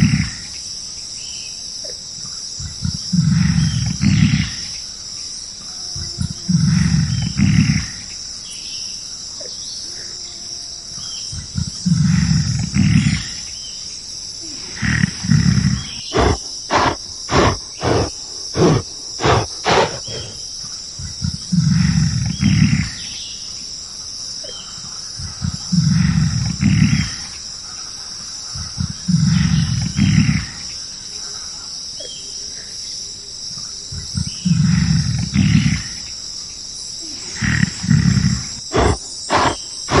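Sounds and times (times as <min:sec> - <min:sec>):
high insect chorus: 0:00.0 - 0:40.0
animal short grunts: 0:14.5 - 0:20.4, 0:37.2 - 0:40.0
large animal roaring: 0:14.5 - 0:20.4, 0:37.2 - 0:40.0.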